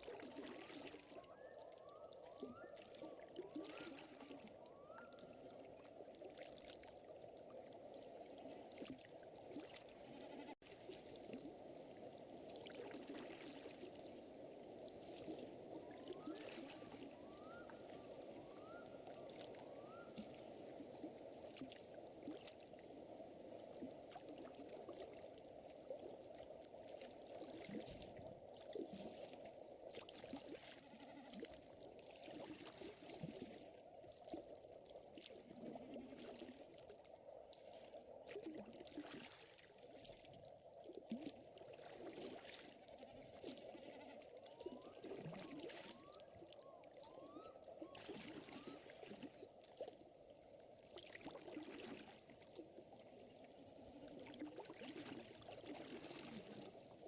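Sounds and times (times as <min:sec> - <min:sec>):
trickle of lake water: 0:00.0 - 0:57.0.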